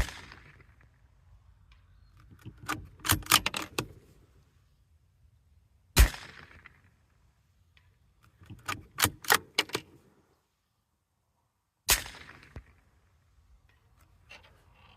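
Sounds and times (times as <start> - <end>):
rifle shots: 0.0 - 0.7, 6.0 - 6.8, 11.9 - 12.8
rifle bolt clicking: 2.4 - 4.0, 8.2 - 10.0.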